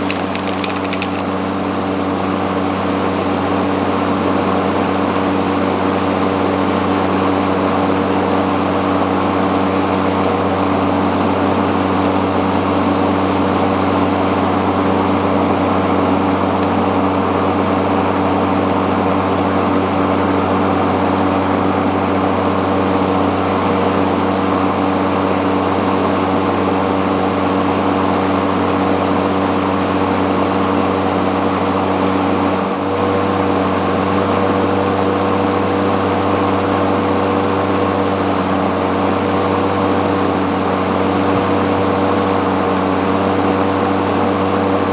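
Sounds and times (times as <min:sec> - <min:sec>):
electric garden tool running: 0:00.0 - 0:01.6.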